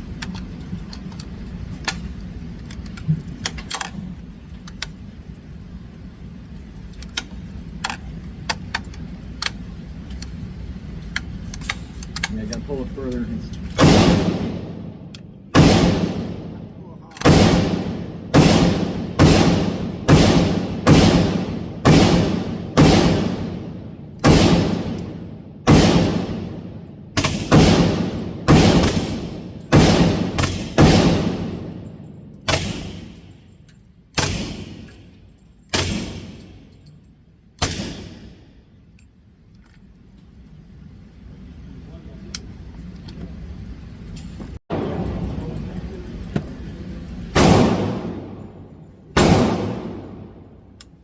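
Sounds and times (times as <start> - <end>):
gunshots with echo: 13.8 - 33.3, 34.2 - 35.0, 35.7 - 36.7, 37.6 - 38.5, 47.4 - 50.5.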